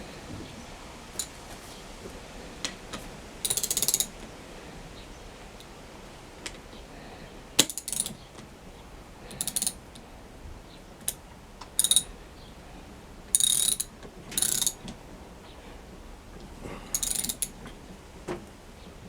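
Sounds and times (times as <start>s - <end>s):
ratchet wrench clicking: 1.2s - 1.4s, 3.4s - 4.1s, 7.6s - 8.2s, 9.3s - 10.0s, 11.8s - 12.1s, 13.3s - 14.8s, 16.9s - 17.6s.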